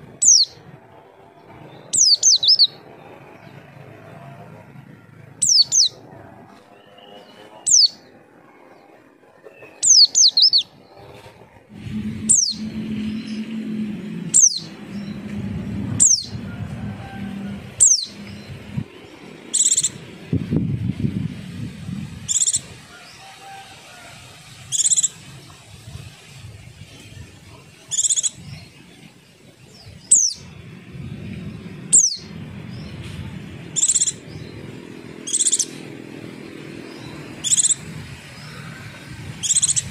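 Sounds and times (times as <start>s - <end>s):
bird high call notes: 11.7s - 18.8s.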